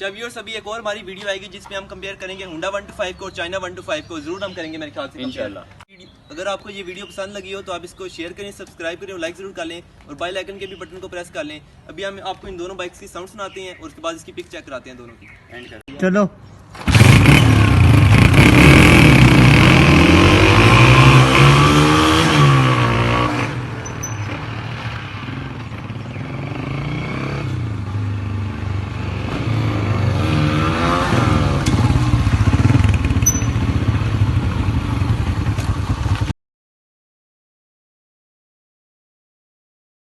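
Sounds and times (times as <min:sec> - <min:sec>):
motorcycle engine revving: 0:16.7 - 0:36.3.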